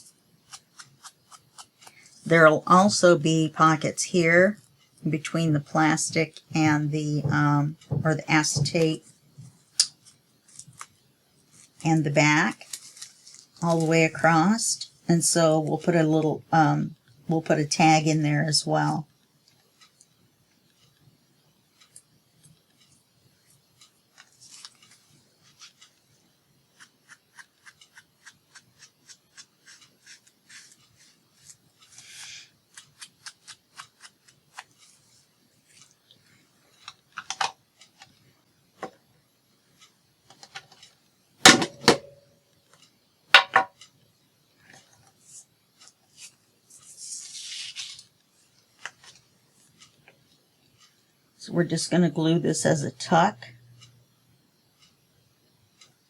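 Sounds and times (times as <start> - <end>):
scissors snipping paper: 0.5 - 2.2, 26.8 - 35.0.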